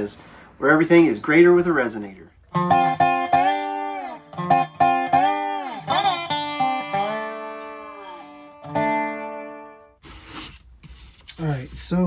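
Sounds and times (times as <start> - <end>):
resonator guitar plucked with slides: 2.5 - 9.9.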